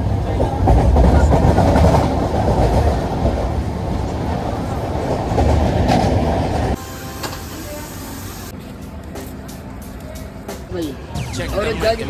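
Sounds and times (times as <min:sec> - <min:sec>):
train wheels clattering on rails: 0:00.0 - 0:07.4.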